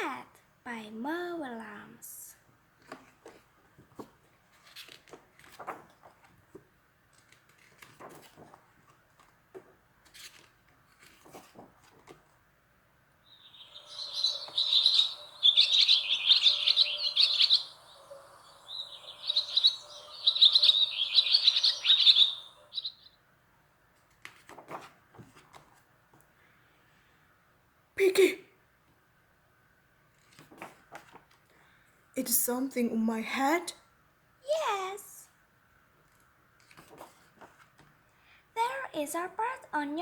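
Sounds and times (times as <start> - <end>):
faint clicks and rustles: 2.8 - 12.4, 23.9 - 26.4, 30.0 - 31.6, 36.0 - 38.2
bird twittering: 13.3 - 23.2.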